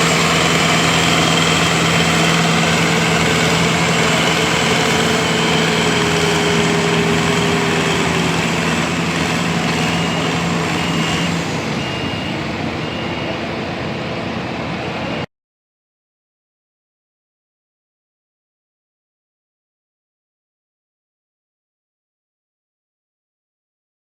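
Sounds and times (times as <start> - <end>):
reversing alarm beeping: 0.0 - 14.2
vehicle engine running: 0.0 - 15.2.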